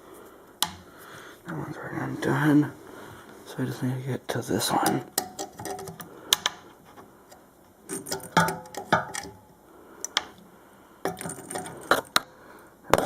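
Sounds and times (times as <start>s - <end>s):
screwdriver clicking on metal plate: 5.1s - 6.5s, 7.9s - 9.4s
handling sounds: 7.8s - 9.5s, 11.0s - 12.2s.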